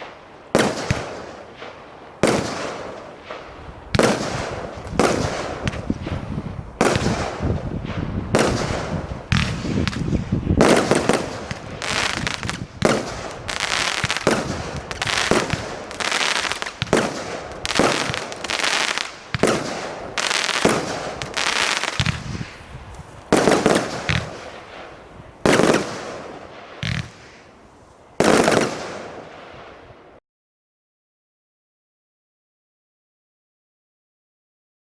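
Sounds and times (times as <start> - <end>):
firework cake bangs: 3.9 - 22.6, 23.3 - 27.4.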